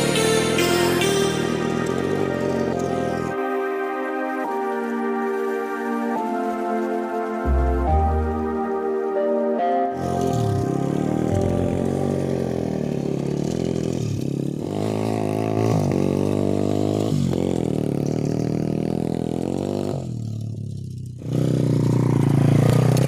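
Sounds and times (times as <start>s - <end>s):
motocross bike engine revving: 1.3s - 3.4s, 10.0s - 23.0s.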